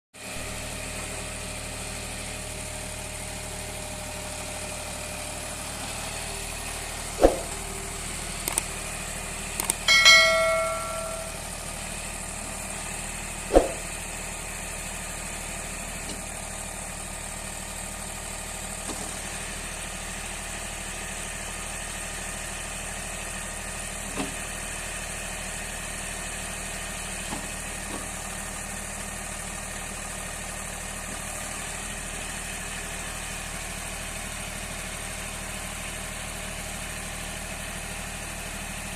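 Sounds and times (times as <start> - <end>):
tractor diesel engine idling: 0.3 - 38.9
sharp knocks: 7.2 - 7.5, 13.5 - 13.8
short metallic ringing: 9.6 - 11.5.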